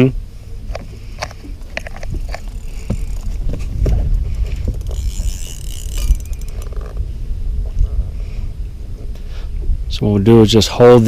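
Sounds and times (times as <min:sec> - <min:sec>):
steady low rumble: 0:00.0 - 0:11.0
fishing reel drag clicking: 0:01.1 - 0:07.1.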